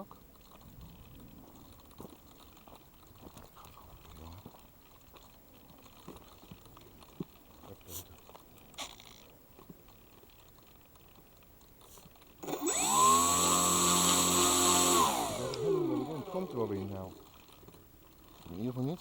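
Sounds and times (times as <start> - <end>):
electric motor and propeller whine: 12.4 - 17.2.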